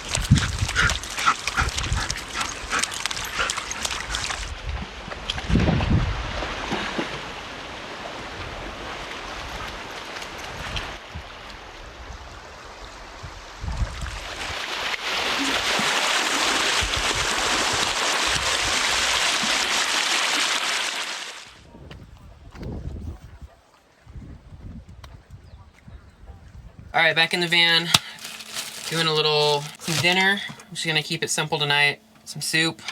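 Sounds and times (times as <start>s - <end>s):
creek water running: 0.0s - 4.6s, 14.0s - 21.6s, 27.0s - 32.9s.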